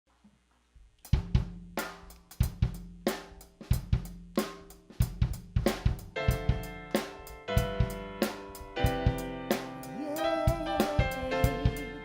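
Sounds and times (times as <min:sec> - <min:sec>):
drum kit beat: 0:01.1 - 0:12.0.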